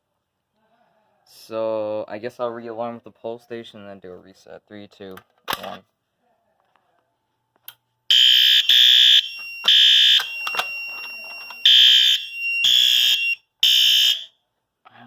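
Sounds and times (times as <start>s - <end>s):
fire alarm horn blasts: 8.1s - 14.3s
faint steady high tone: 9.3s - 12.6s.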